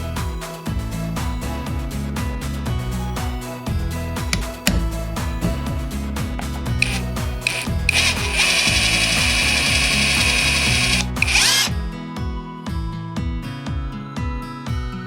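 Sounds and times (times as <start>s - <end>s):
cordless drill drilling into wood: 6.8s - 11.7s.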